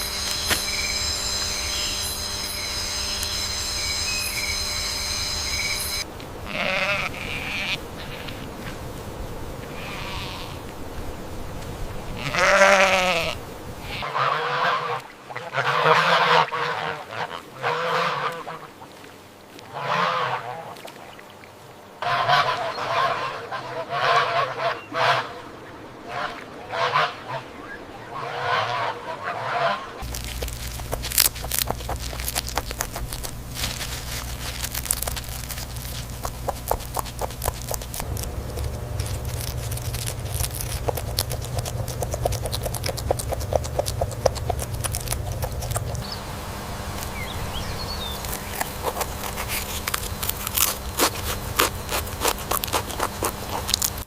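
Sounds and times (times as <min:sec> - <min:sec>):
waterfowl honking: 0:00.0 - 0:08.2, 0:12.2 - 0:19.0, 0:19.7 - 0:21.1, 0:22.0 - 0:32.6
steady low hum: 0:00.0 - 0:14.0, 0:21.6 - 0:54.0
scratching and rustling clicks: 0:30.0 - 0:46.0, 0:48.2 - 0:54.0.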